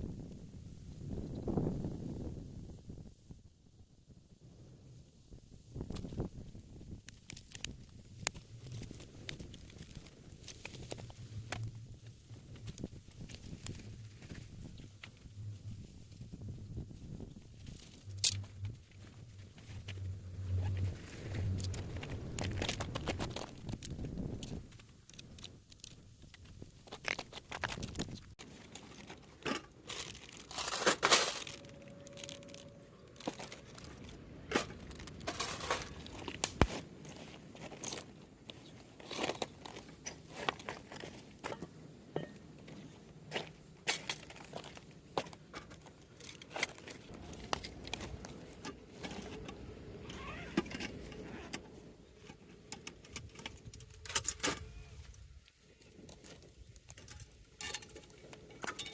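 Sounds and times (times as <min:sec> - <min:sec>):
crinkling and tearing: 0:07.0 - 0:41.3.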